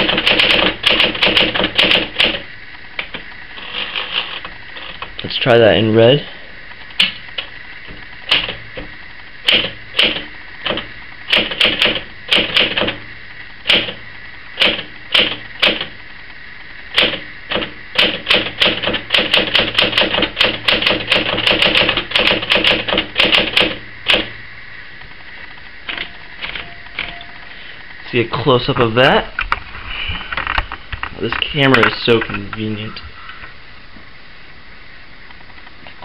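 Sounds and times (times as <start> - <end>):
manual typewriter keystrokes: 0.0 - 2.4, 8.3 - 8.6, 9.5 - 13.0, 13.7 - 14.0, 14.6 - 15.9, 16.9 - 24.3, 25.9 - 27.3.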